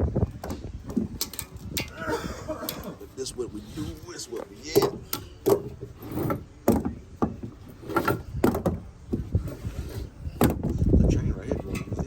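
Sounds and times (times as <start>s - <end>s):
sharp knocks and clunks: 4.7s - 9.4s, 10.3s - 10.9s.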